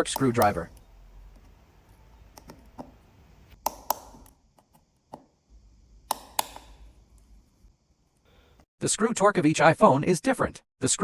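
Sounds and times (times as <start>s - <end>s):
screwdriver clicks and taps: 2.3s - 3.0s, 3.6s - 5.3s, 6.1s - 7.3s.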